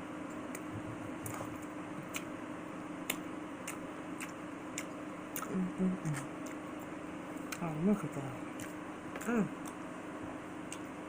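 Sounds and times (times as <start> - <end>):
faint steady hum: 0.0 - 11.0
wet chewing clicks and smacks: 3.0 - 6.7, 7.4 - 7.6, 8.5 - 9.8, 10.6 - 10.9.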